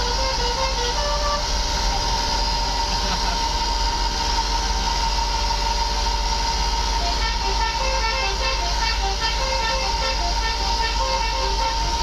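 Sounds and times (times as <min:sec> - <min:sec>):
vehicle running noise: 0:00.0 - 0:12.0
constant high tone: 0:07.0 - 0:12.0
short pitched notes: 0:07.0 - 0:12.0.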